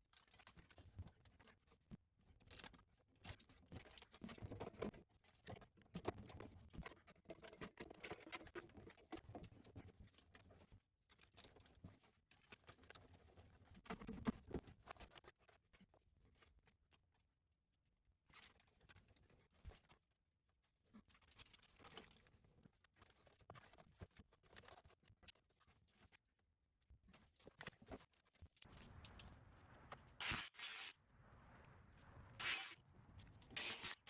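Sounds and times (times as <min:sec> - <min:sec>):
rustling and crinkling: 0:20.8 - 0:34.0.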